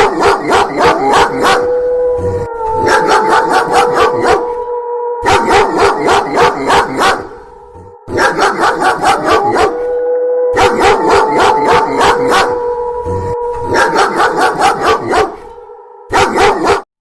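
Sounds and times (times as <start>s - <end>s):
dog barking rapidly: 0.0s - 1.6s, 2.8s - 4.5s, 5.3s - 7.3s, 8.1s - 9.7s, 13.7s - 15.4s, 16.1s - 16.9s
long steady howl: 0.0s - 16.8s.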